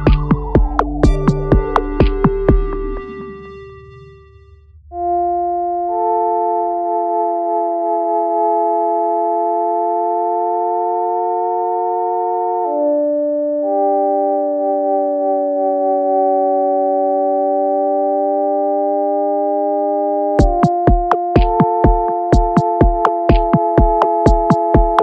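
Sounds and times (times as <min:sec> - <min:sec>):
synthesizer sustained chord: 0:00.0 - 0:22.8.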